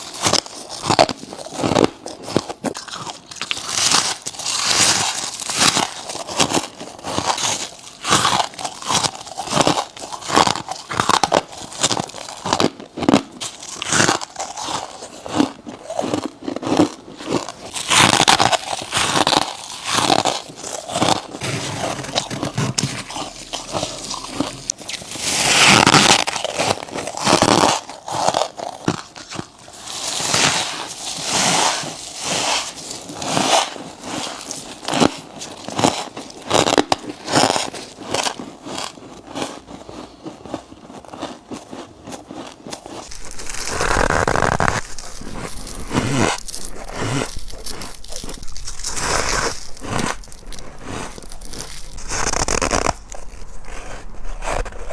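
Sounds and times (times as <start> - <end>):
chewing crunchy frost: 0.0 - 54.9.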